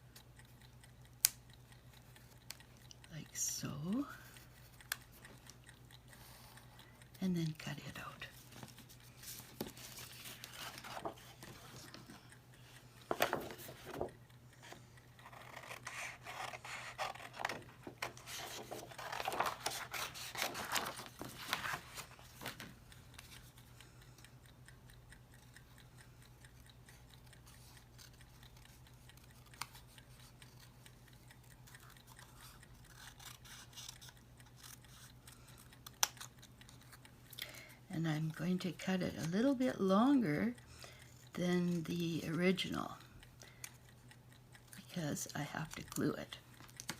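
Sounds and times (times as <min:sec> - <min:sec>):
scissors snipping paper: 0:15.2 - 0:22.6, 0:31.7 - 0:37.0.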